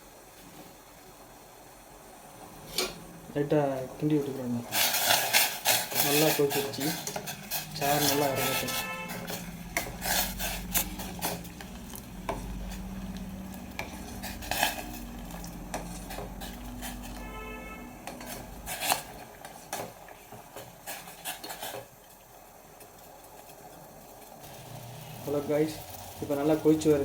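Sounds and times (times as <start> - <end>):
water boiling: 0.0 - 27.0
spoon clinking and scraping pot: 4.7 - 22.2
steady low hum: 6.6 - 19.2.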